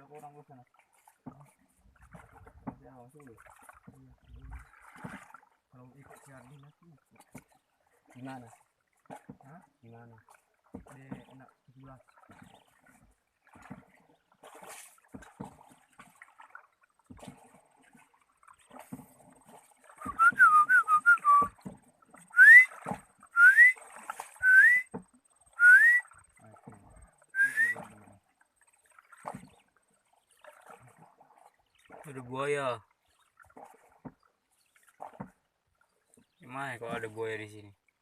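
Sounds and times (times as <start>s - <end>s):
person whistling: 20.0s - 21.5s, 22.4s - 22.7s, 23.4s - 23.8s, 24.4s - 24.9s, 25.6s - 26.0s, 27.4s - 27.8s.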